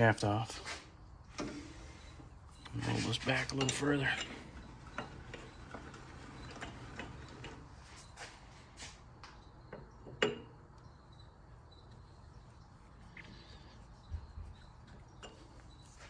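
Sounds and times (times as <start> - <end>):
metal parts clicking and tapping: 2.6 - 7.6.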